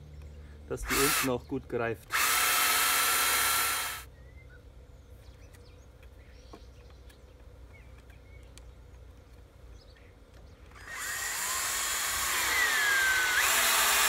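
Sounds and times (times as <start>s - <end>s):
power drill boring into wood: 0.8s - 1.3s, 2.1s - 4.1s, 10.8s - 14.0s
faint bird chirps: 4.1s - 9.0s.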